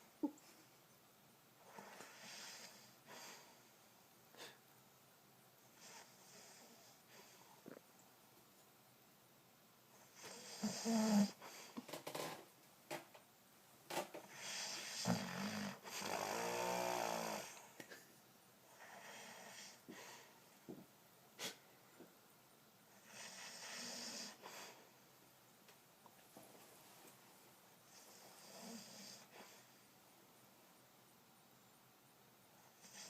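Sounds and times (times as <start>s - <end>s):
man snoring: 10.2s - 11.4s, 14.3s - 17.6s.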